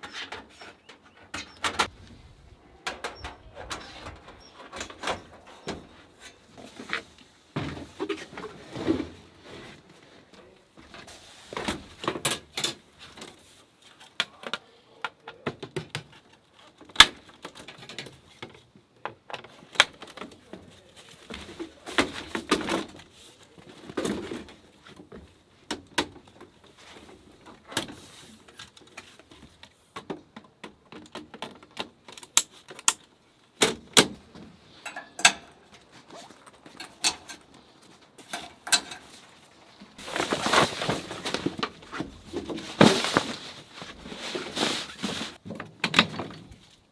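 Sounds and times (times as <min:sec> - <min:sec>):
camping gear clicking and clacking: 0:15.7 - 0:46.9
rustling: 0:35.5 - 0:45.4.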